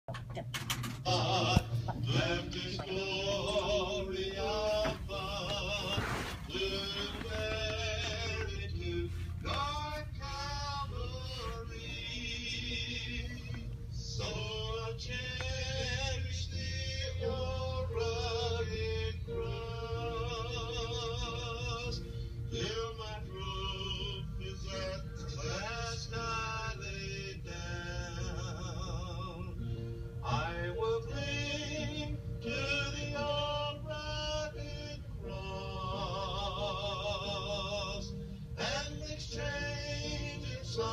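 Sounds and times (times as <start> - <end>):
low hum: 1.0 - 40.9
person singing with vibrato: 1.0 - 40.9
sustained accompaniment tone: 1.1 - 23.2.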